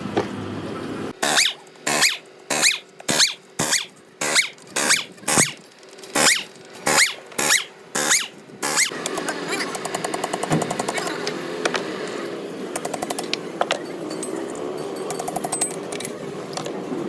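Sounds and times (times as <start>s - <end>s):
hand tool scraping with squeal: 1.2s - 5.6s, 6.2s - 8.9s.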